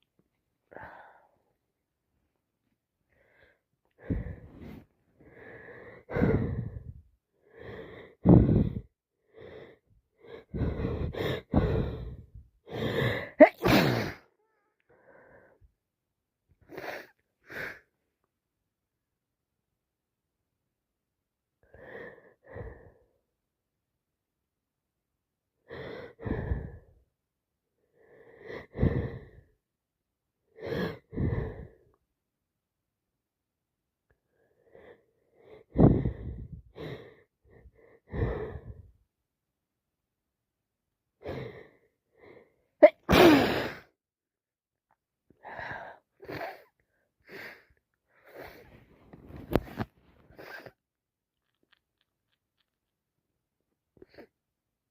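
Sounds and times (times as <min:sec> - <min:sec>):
person sneezing: 0:13.4 - 0:14.3, 0:42.8 - 0:43.9
sniffles and wheezy breaths: 0:45.4 - 0:50.8.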